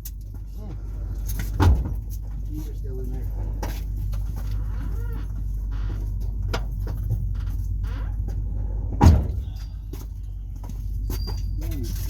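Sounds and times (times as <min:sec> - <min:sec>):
low engine hum: 0:00.0 - 0:12.0
car door shutting: 0:01.4 - 0:02.1, 0:06.0 - 0:10.0.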